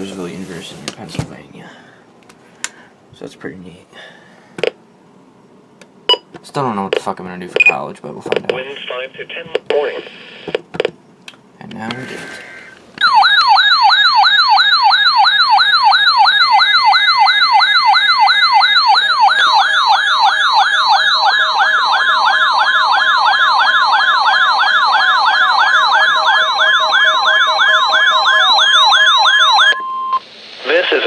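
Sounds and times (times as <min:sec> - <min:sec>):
steady warning alarm tone: 0:13.0 - 0:30.2
warbling alarm siren: 0:13.0 - 0:30.2.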